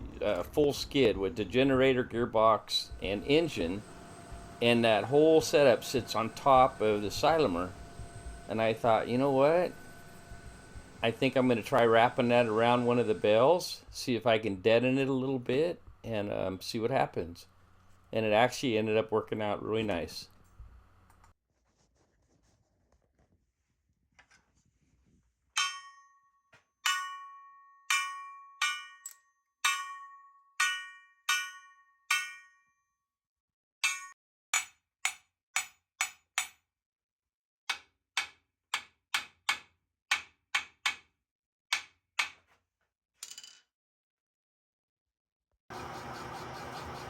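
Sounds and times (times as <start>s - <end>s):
metal tool striking steel flange: 25.6s - 26.2s, 26.8s - 32.6s, 33.8s - 36.6s.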